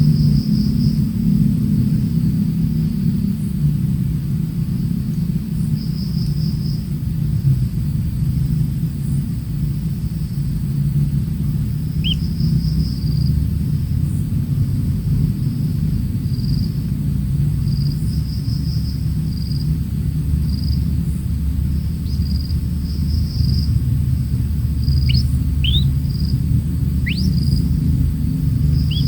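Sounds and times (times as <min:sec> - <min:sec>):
steady low rumble: 0:00.0 - 0:29.0
insect chirps: 0:10.1 - 0:13.6, 0:20.4 - 0:29.0
rising bird whistles: 0:11.9 - 0:12.7, 0:24.8 - 0:27.8, 0:28.5 - 0:29.0.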